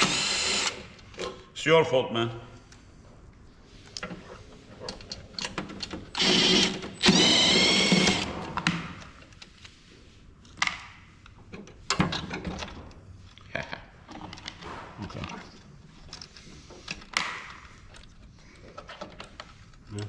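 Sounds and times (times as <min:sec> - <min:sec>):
power drill motor whine: 0:00.0 - 0:00.9, 0:06.1 - 0:08.3.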